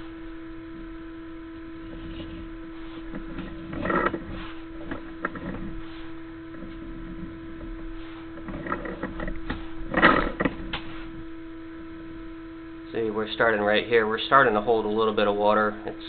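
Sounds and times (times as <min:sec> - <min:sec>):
electrical hum: 0:00.0 - 0:16.0
cable scraping and knocking in drain: 0:03.1 - 0:05.8, 0:08.4 - 0:10.8.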